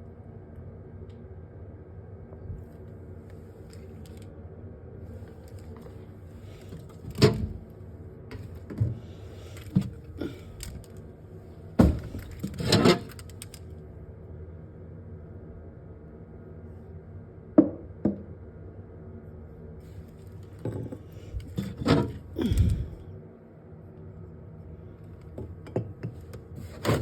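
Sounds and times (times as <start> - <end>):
steady low hum: 0.0 - 27.0
objects knocking and rattling: 11.8 - 13.6, 20.5 - 23.0.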